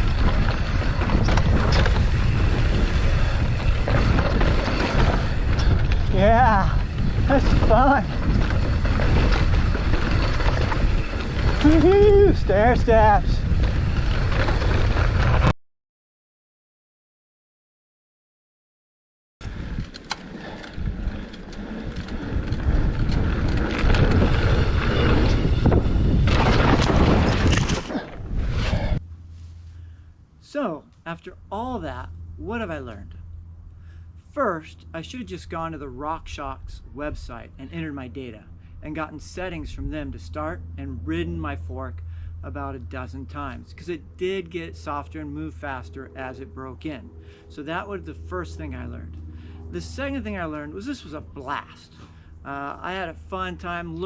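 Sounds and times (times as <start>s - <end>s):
bike clicks and rattles: 0.0s - 15.5s, 19.4s - 29.0s
tyres rumbling on dirt: 0.0s - 15.5s, 19.5s - 29.0s
wind on microphone: 0.0s - 15.5s, 20.7s - 29.0s.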